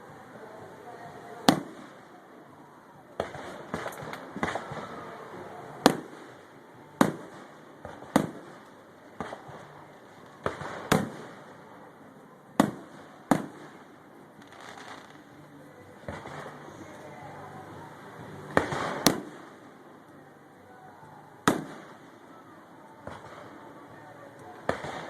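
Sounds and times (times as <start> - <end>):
firework crackle: 0.0 - 25.0
firework shells bursting: 3.2 - 5.2, 5.8 - 11.8, 12.6 - 15.4, 18.5 - 19.8, 21.4 - 22.2.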